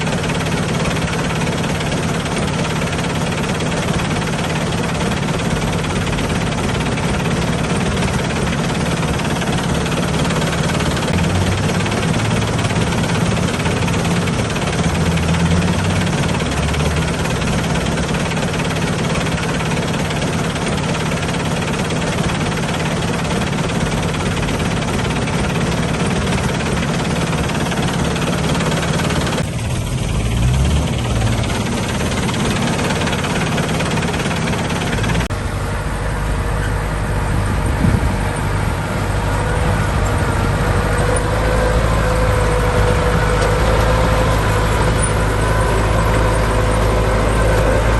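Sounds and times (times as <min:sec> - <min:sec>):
heavy diesel engines running: 0:00.0 - 0:47.9
rising whine: 0:35.3 - 0:47.9.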